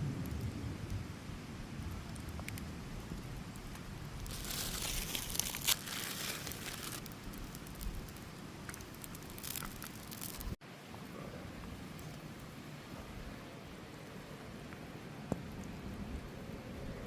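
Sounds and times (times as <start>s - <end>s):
plastic packaging crinkling: 4.2s - 8.2s, 8.8s - 10.6s.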